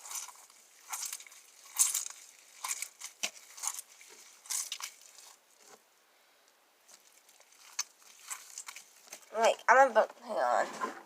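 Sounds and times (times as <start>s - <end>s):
slime squelching: 0.0s - 5.8s, 6.8s - 9.8s.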